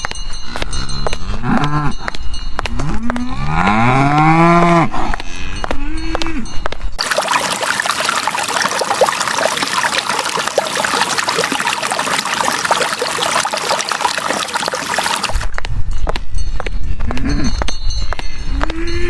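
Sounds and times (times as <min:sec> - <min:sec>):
water pouring and trickling: 0:07.0 - 0:15.5.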